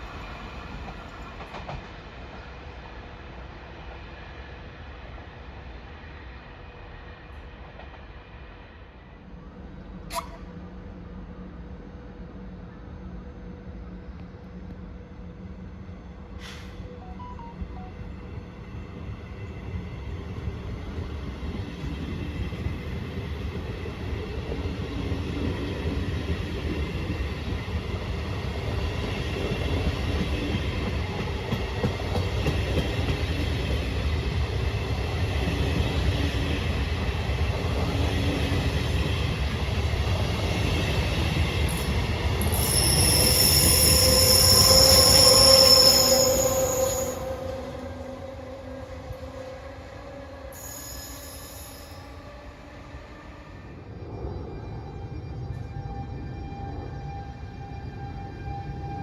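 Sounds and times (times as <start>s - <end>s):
train rumbling: 0.0s - 59.0s
high-pitched metallic squeal: 41.7s - 52.5s.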